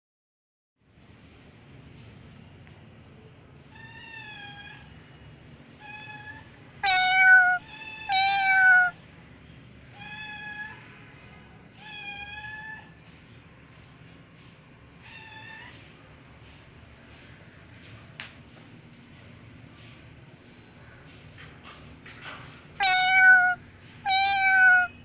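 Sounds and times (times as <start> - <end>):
cat meowing: 3.7 - 5.0, 5.8 - 9.0, 9.9 - 10.8, 11.7 - 13.0, 22.8 - 25.0.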